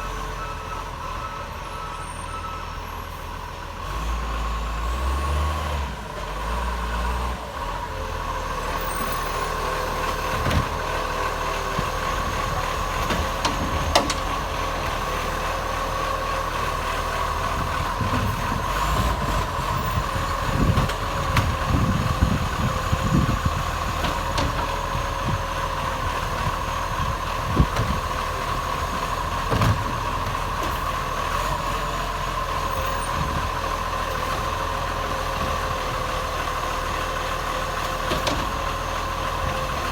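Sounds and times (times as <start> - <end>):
garbage truck engine idling: 7.4 - 39.9
knocks and clunks: 10.2 - 10.8, 11.7 - 15.0, 17.6 - 25.4, 28.9 - 30.8, 37.8 - 38.7.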